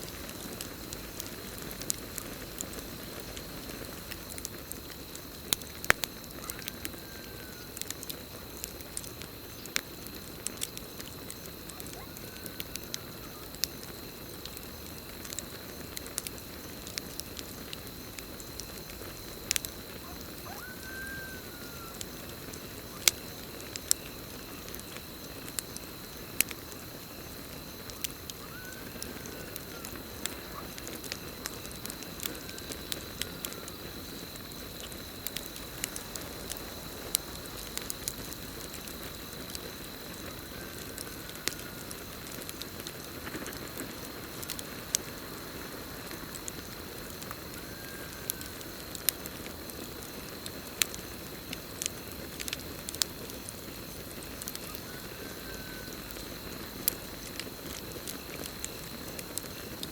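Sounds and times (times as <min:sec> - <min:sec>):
campfire crackling and popping: 0:00.0 - 0:59.9
cricket trill: 0:00.0 - 0:59.9
night creature calls: 0:20.0 - 0:22.2, 0:28.3 - 0:30.8.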